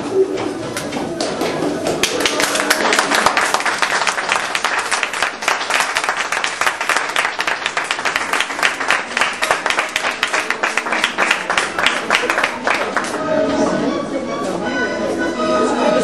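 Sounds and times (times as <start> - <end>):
audience applauding: 1.9 - 13.2.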